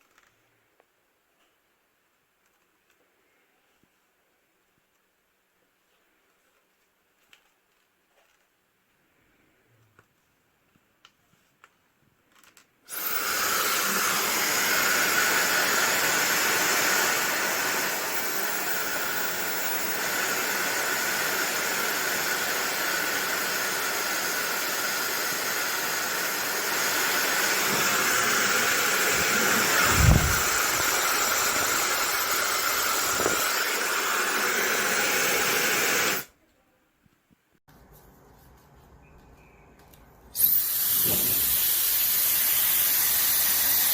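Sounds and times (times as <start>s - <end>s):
hair dryer running: 12.9s - 36.3s.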